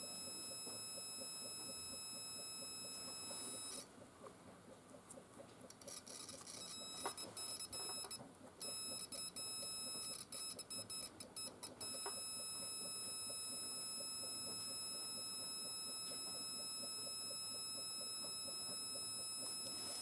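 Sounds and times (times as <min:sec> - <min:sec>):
high-pitched electronic buzzer: 0:00.0 - 0:03.8, 0:06.6 - 0:20.0.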